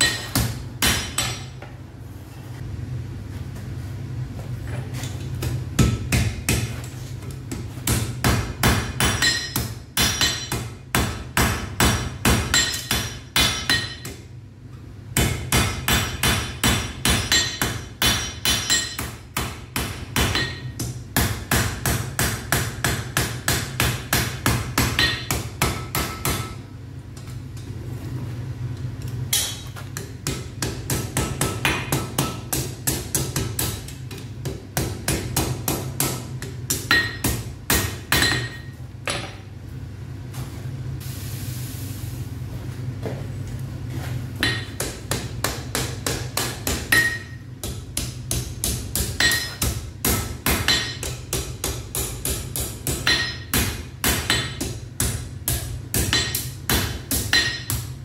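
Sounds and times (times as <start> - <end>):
hammer striking iron on anvil: 0.0 - 1.6, 5.4 - 6.7, 7.8 - 14.2, 15.2 - 26.6, 29.3 - 39.5, 44.4 - 58.0
steady low hum: 0.0 - 58.0.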